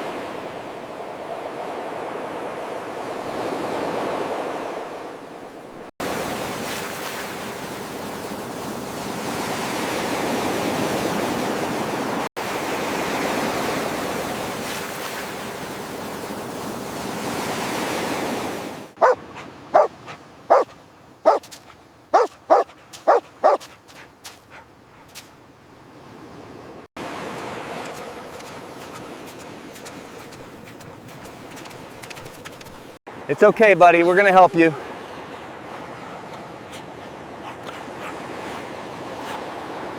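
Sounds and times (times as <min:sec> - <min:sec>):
surf washing on beach: 0:00.0 - 0:20.7, 0:21.3 - 0:39.9
dog barking: 0:19.0 - 0:19.2, 0:20.5 - 0:20.7, 0:21.3 - 0:23.8.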